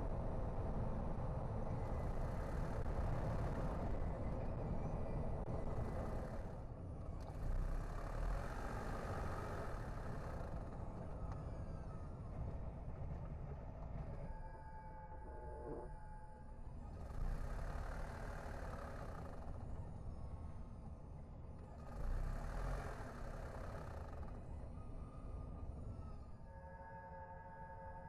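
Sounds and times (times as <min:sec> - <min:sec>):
car tyres and engine rumble: 0:16.7 - 0:26.4.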